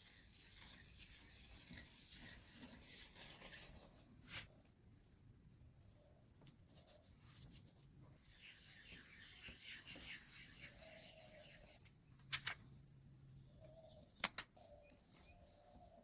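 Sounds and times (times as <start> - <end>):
faint scratching and rubbing: 0.0 - 4.7, 5.8 - 12.7
sharp clicks: 14.2 - 15.0.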